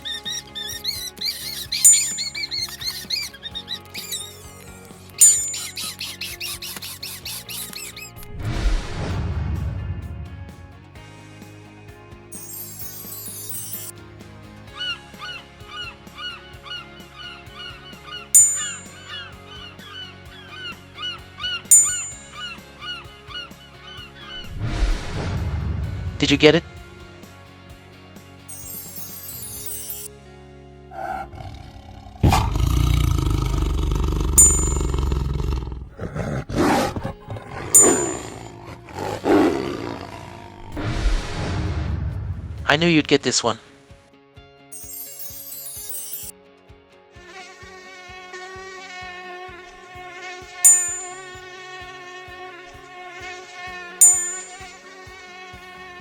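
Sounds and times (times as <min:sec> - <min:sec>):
animal calling: 0:00.0 - 0:08.4, 0:14.7 - 0:25.3, 0:30.9 - 0:41.0
soft background music: 0:00.0 - 0:56.0
bright chime: 0:01.4 - 0:03.3, 0:03.9 - 0:04.6, 0:05.2 - 0:08.1, 0:12.3 - 0:13.9, 0:18.4 - 0:19.2, 0:21.7 - 0:22.6, 0:28.5 - 0:30.1, 0:34.4 - 0:35.2, 0:37.8 - 0:38.4, 0:44.7 - 0:46.4, 0:50.7 - 0:51.4, 0:54.0 - 0:54.8
big cat roaring: 0:30.9 - 0:42.3.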